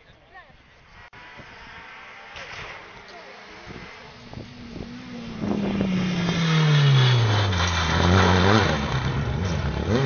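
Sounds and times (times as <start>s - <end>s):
rally car engine at high revs: 1.1s - 10.0s.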